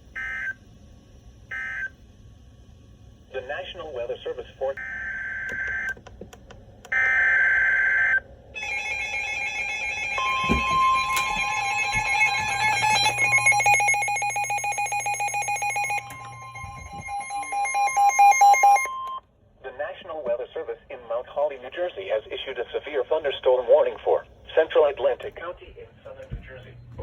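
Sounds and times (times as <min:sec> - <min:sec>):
electronic alarm beeps: 0:06.9 - 0:19.2
steady warning alarm tone: 0:06.9 - 0:19.2
buzzy digital header bursts: 0:08.6 - 0:18.8.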